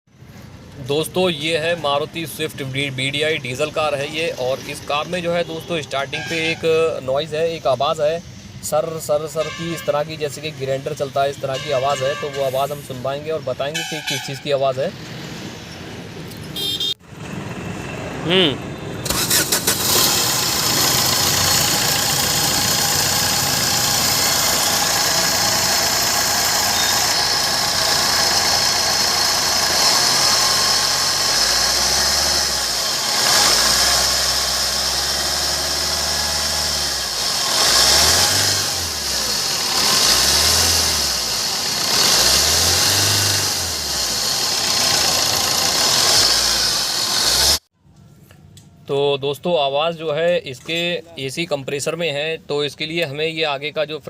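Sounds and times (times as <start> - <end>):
engine revving: 17.2 - 47.7
diesel engine running: 18.4 - 47.6
grinding pulley bearing whir: 19.1 - 47.6.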